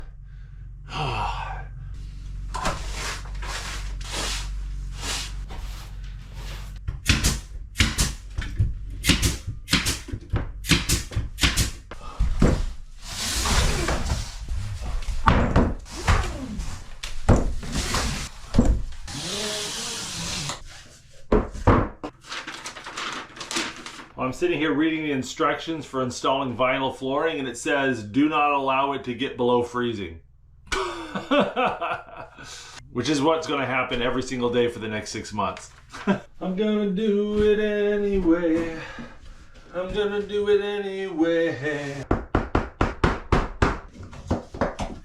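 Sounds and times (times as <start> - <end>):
scraping or rustling: 2.0 - 6.9, 12.5 - 24.2
hard knocks and thuds: 6.8 - 12.8, 15.0 - 16.4, 21.3 - 22.2, 42.0 - 45.0.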